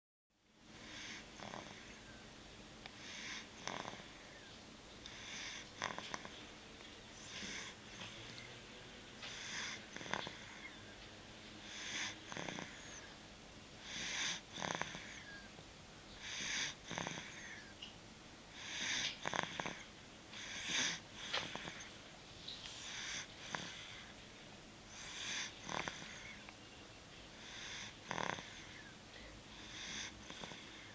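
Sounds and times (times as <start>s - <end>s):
person snoring with wheezy breaths: 0.7s - 2.1s, 3.0s - 4.5s, 5.1s - 6.4s, 7.2s - 8.4s, 9.2s - 10.9s, 11.6s - 13.2s, 13.8s - 15.5s, 16.2s - 17.8s, 18.5s - 21.9s, 22.8s - 24.2s, 24.9s - 26.5s, 27.3s - 30.9s.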